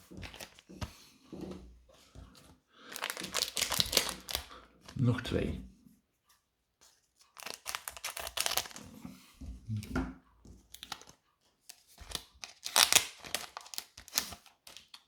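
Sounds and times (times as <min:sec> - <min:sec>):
foil wrapper tearing and crinkling: 0:02.8 - 0:04.6, 0:07.3 - 0:08.8, 0:12.0 - 0:15.0.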